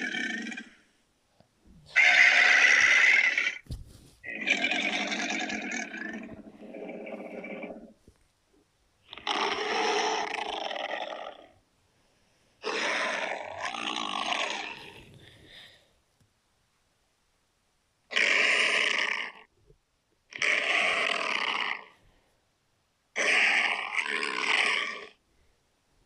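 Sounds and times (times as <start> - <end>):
monster roars: 12.6 - 15.0.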